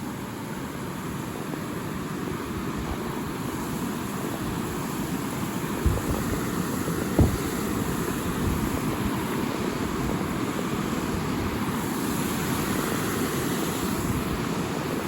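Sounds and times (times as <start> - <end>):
wind buffeting microphone: 5.6 - 11.8.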